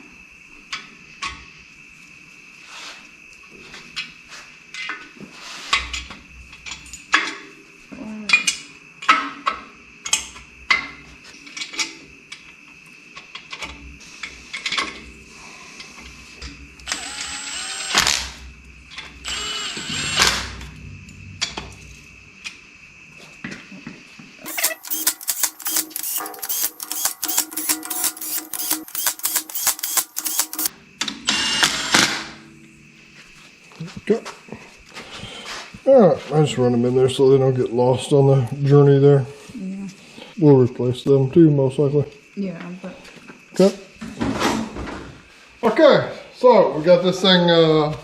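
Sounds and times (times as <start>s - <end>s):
power tool running bolts: 16.8s - 18.4s, 19.0s - 20.6s, 24.4s - 32.4s.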